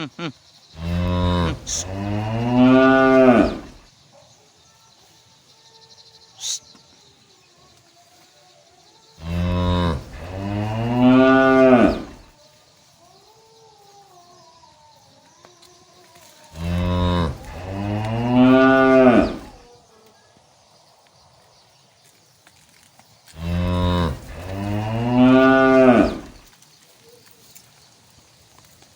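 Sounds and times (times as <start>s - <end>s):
cow mooing: 0.8s - 3.9s, 9.2s - 12.3s, 16.5s - 19.6s, 23.4s - 26.5s.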